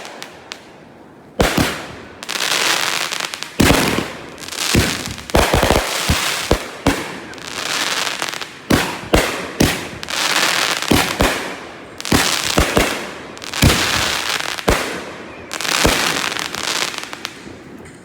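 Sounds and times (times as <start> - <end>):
fireworks crackling: 0.0 - 17.9
fireworks shells bursting: 3.6 - 17.3.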